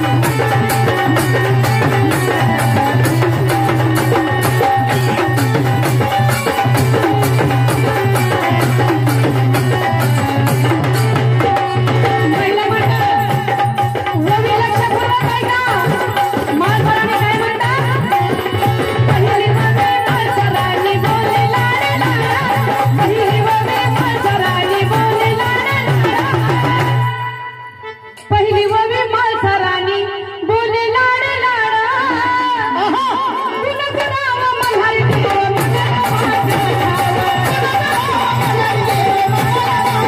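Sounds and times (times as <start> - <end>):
hand drums fast rhythm: 0.0 - 27.1, 34.6 - 40.0.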